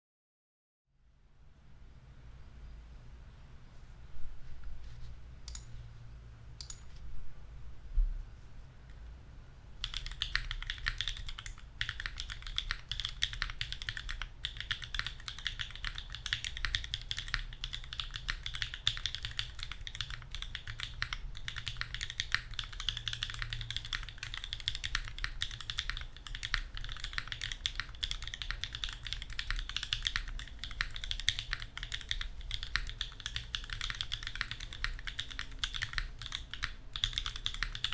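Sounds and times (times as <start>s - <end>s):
mechanical keyboard typing: 9.8s - 37.9s.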